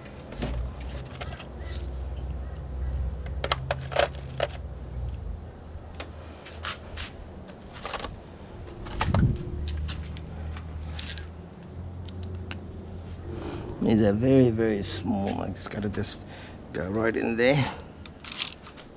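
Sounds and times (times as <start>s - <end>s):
metal parts and tools clinking: 0.0s - 2.2s, 3.4s - 4.6s, 8.8s - 11.4s, 18.0s - 18.9s
steady low hum: 0.0s - 18.9s.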